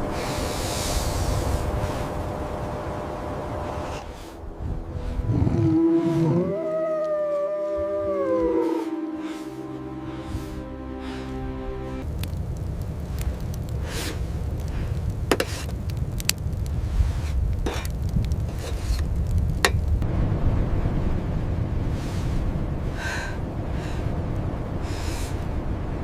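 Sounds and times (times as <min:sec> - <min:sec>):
soft hissing: 0:00.0 - 0:02.7, 0:13.0 - 0:15.9, 0:16.7 - 0:19.8, 0:21.8 - 0:24.1
low rumble: 0:00.0 - 0:26.0.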